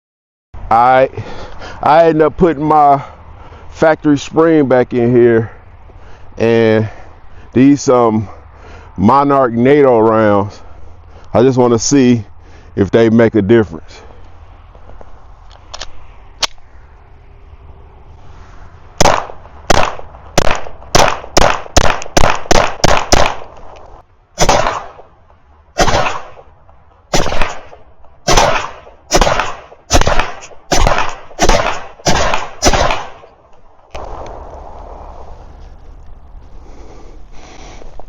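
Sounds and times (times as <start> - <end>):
pistol shots echoing: 19.0 - 23.5, 24.4 - 25.0, 25.8 - 26.5, 27.1 - 33.2.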